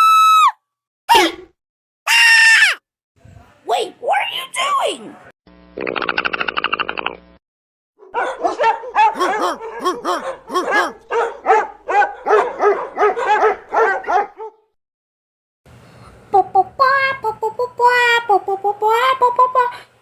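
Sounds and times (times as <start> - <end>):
person speaking: 3.2 - 5.2, 8.5 - 11.3, 16.3 - 19.9
dog barking and yelping: 8.0 - 14.7.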